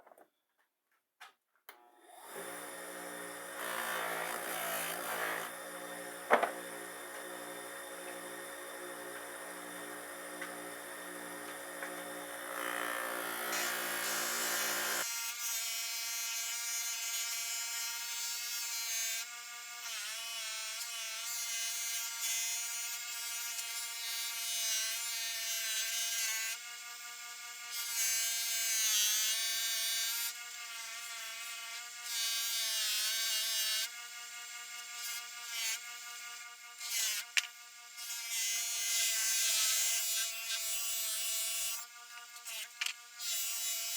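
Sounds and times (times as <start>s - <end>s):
polishing motor whine: 2.2s - 15.0s.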